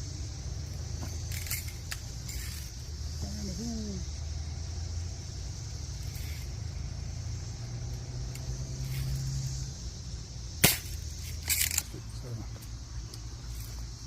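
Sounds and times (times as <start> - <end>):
steady low hum: 0.0 - 14.0
bb gun firing snap: 10.6 - 11.8.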